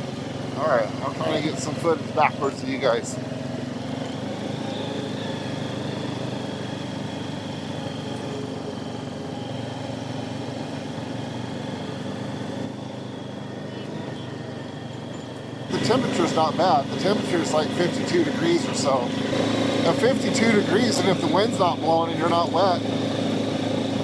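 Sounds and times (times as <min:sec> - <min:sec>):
atv engine running: 0:00.0 - 0:24.0.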